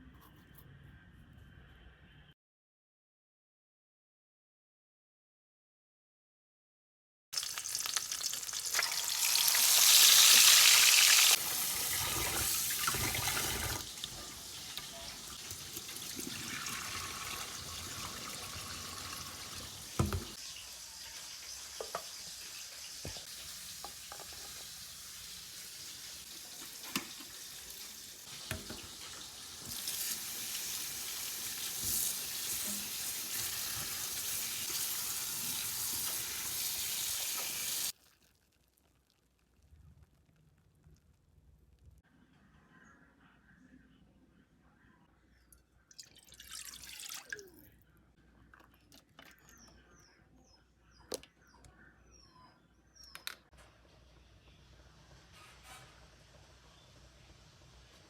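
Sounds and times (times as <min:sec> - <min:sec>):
tap water running: 0:07.4 - 0:38.0, 0:46.2 - 0:47.4.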